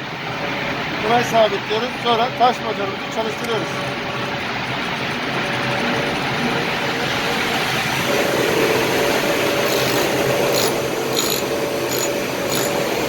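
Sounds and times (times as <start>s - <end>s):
bench grinder humming: 3.5s - 13.0s
drill bit scraping stone: 9.6s - 13.0s.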